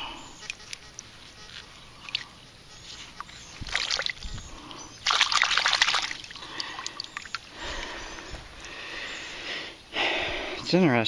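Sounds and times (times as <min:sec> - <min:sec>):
water sloshing and trickling: 0:00.3 - 0:08.9
water splash: 0:03.6 - 0:04.2, 0:05.0 - 0:07.4.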